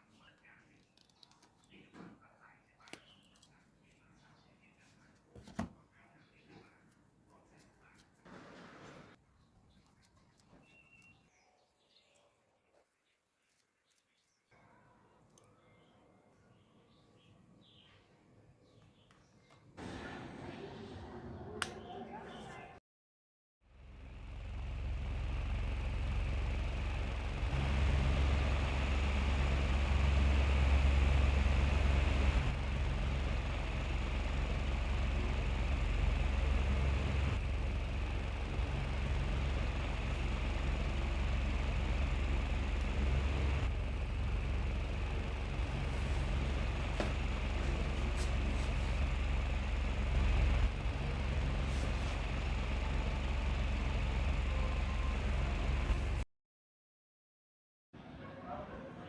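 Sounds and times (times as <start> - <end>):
small ceiling fan running: 24.0 - 56.2.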